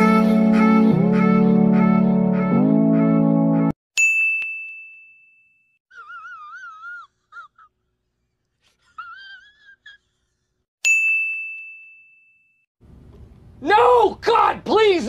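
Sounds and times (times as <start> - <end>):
bright bell ding: 4.0 - 5.8, 10.8 - 12.6.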